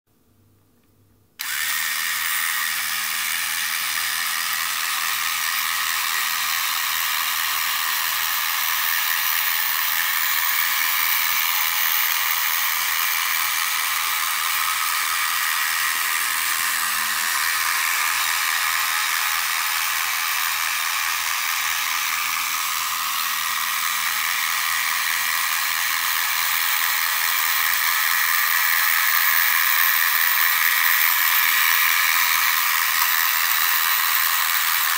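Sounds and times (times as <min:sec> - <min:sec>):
suction fan motor whirring: 0:01.4 - 0:34.9.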